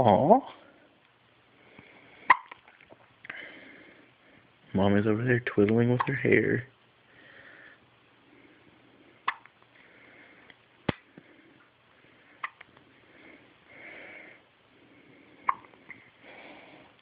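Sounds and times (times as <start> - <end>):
baby hiccupping: 2.3 - 2.6, 9.2 - 9.5, 15.4 - 15.7.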